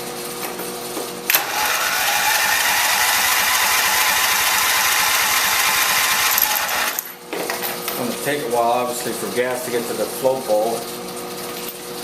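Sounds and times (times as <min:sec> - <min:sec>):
starter motor cranking engine: 0:01.3 - 0:07.1.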